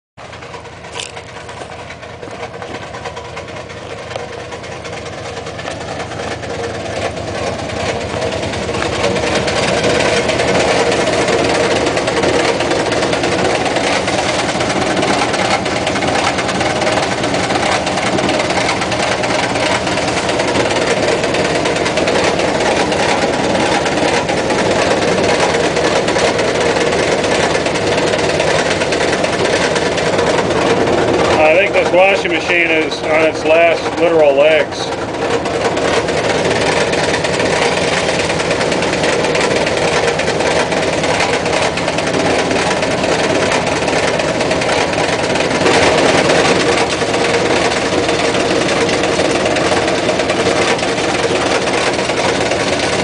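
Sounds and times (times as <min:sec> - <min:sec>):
washing machine rattling and knocking: 0:00.2 - 0:53.0.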